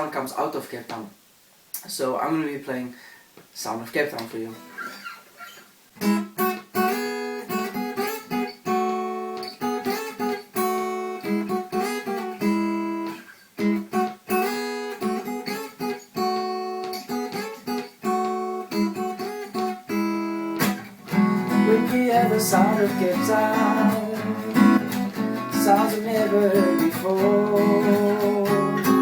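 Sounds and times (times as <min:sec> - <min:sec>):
acoustic guitar strumming: 0:04.5 - 0:29.0.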